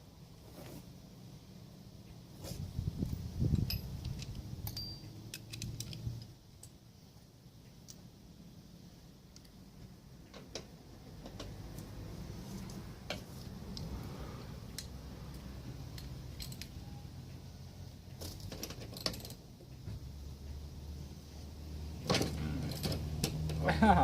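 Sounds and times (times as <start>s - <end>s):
metallic clicks of hand tools: 3.5s - 6.8s, 14.7s - 16.9s.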